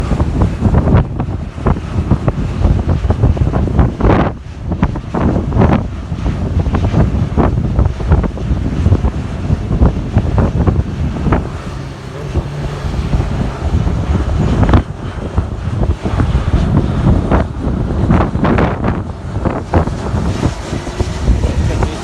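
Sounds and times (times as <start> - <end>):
wind buffeting microphone: 0.0 - 22.0.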